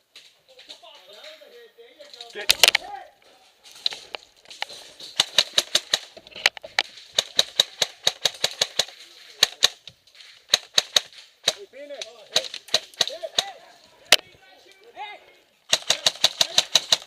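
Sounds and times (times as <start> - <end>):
airsoft guns firing: 2.4 - 2.9, 5.0 - 9.8, 10.4 - 14.2, 15.7 - 17.0.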